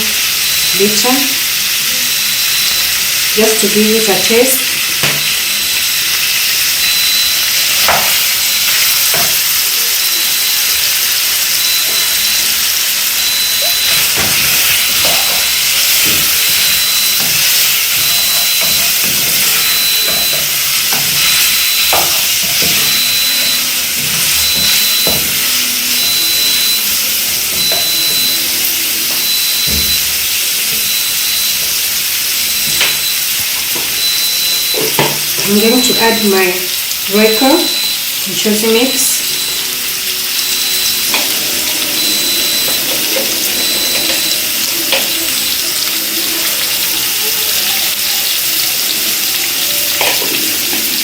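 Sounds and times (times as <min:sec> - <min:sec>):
food sizzling in a frying pan: 0:00.0 - 0:51.0.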